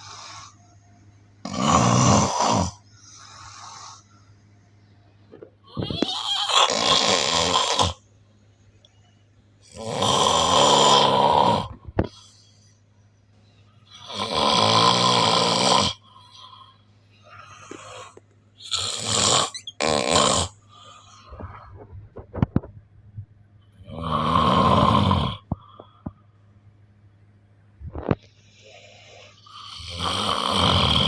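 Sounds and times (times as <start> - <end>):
person snoring loudly: 1.4 - 2.8, 5.8 - 8.0, 9.6 - 11.8, 14.0 - 16.0, 17.7 - 20.6, 23.8 - 25.5, 28.6 - 31.0.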